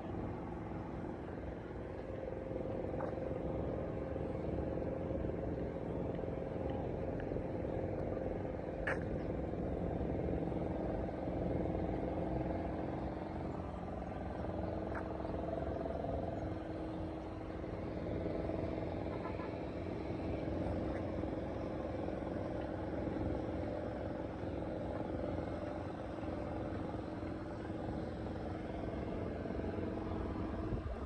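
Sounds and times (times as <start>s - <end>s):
vehicle engines humming: 0.0s - 31.0s.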